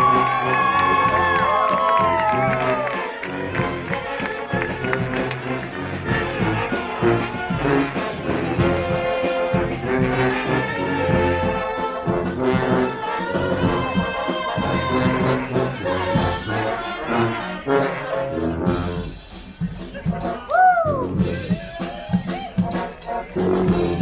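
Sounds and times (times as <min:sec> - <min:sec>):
brass band playing: 0:00.0 - 0:24.0
drum strokes: 0:18.7 - 0:24.0.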